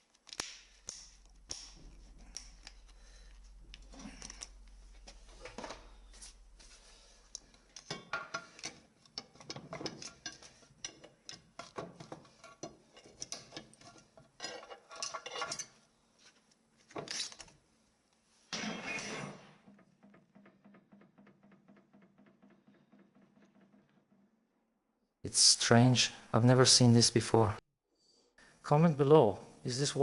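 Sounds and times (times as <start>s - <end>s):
metal parts clinking and scraping: 7.3s - 15.8s.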